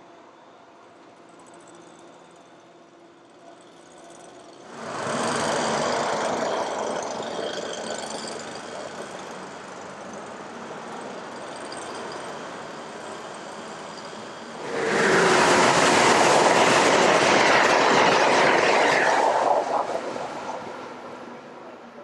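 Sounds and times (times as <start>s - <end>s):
train passing: 4.7s - 22.0s.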